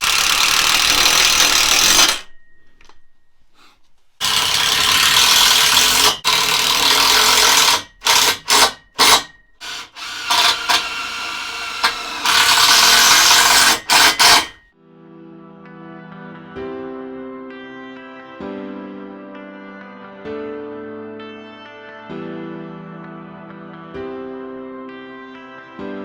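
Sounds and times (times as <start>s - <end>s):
power tool hissing and rasping: 0.0s - 2.3s, 4.2s - 14.6s.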